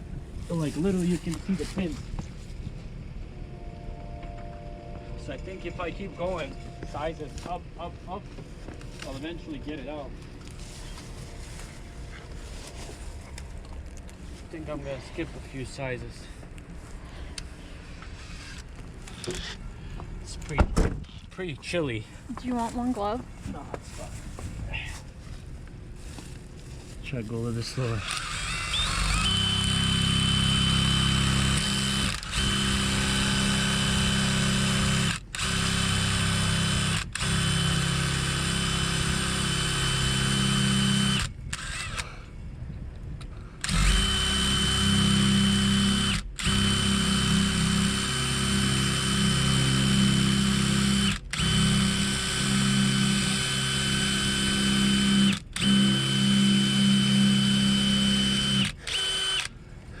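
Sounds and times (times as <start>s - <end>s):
electric drill boring metal: 28.0s - 42.0s, 43.6s - 59.5s.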